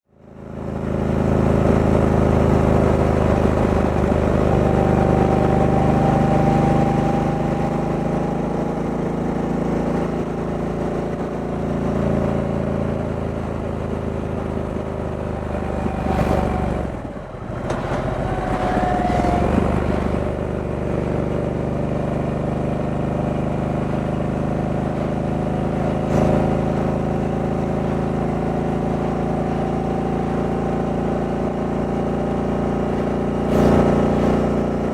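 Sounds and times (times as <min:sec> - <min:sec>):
motorcycle engine running: 0:00.2 - 0:34.9.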